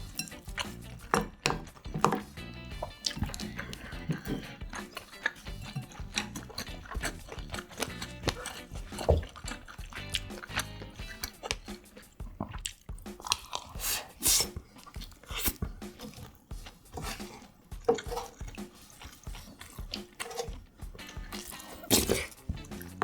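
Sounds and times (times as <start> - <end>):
crunchy bites and chewing: 0.0 - 23.0.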